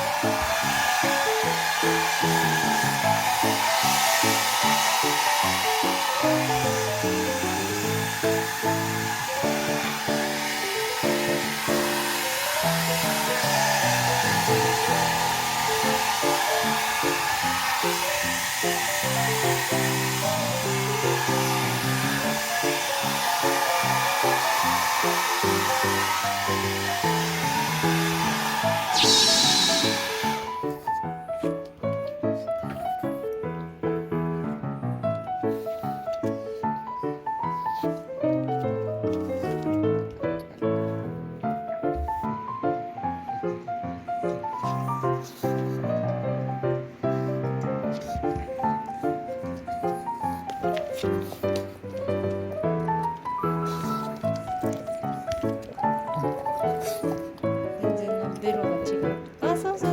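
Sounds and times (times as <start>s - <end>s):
hair dryer blowing: 0.0s - 30.9s
light background music: 0.0s - 59.9s
background music melody notes: 51.6s - 59.9s.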